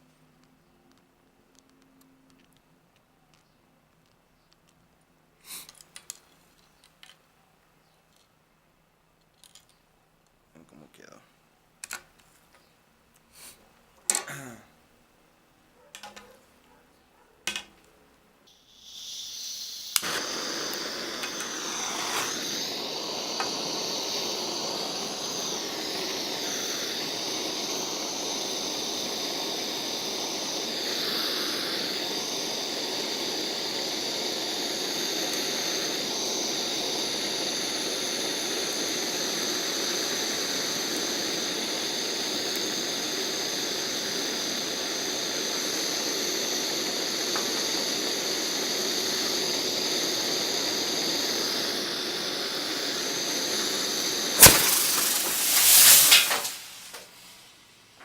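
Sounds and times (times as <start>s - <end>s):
blowtorch flame hissing: 18.5s - 57.4s
gas hissing: 18.5s - 58.0s
blowtorch igniter click: 18.7s - 57.2s.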